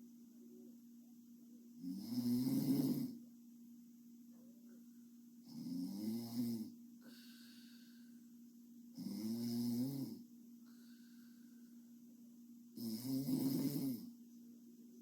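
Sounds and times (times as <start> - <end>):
faint steady hum: 0.0 - 15.0
woman snoring: 1.8 - 3.2, 5.5 - 7.2, 9.0 - 10.2, 12.8 - 14.1.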